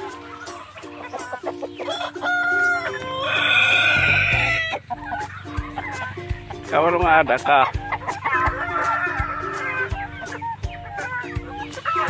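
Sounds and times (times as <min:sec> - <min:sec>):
chickens clucking: 0:00.0 - 0:12.0
rooster crowing: 0:01.8 - 0:04.8, 0:08.2 - 0:10.0, 0:11.8 - 0:12.0.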